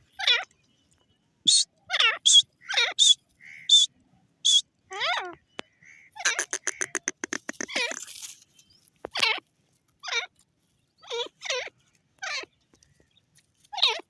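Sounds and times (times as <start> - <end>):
francolin calling: 1.5 - 8.2.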